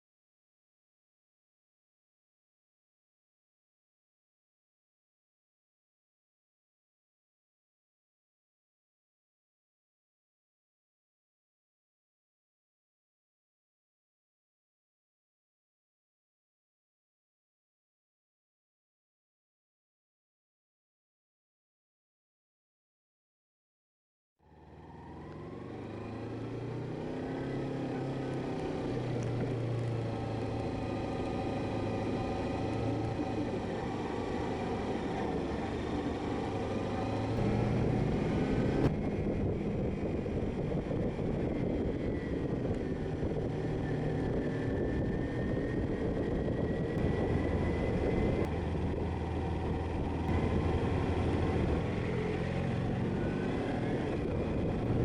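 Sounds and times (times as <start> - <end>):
motorcycle engine running: 24.4 - 55.0.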